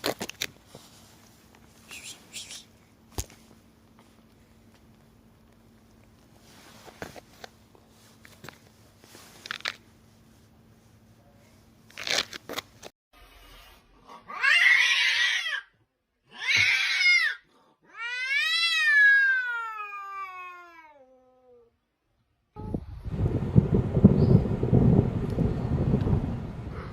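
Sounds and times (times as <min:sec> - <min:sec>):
cat crying: 0:14.3 - 0:15.7, 0:16.3 - 0:21.6.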